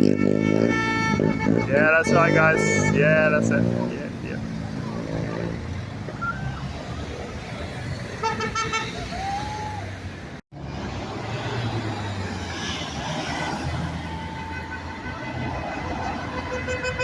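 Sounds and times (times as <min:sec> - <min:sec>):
car horns honking: 0:00.0 - 0:04.4, 0:08.0 - 0:09.2, 0:14.1 - 0:17.0
passing road traffic: 0:00.0 - 0:17.0.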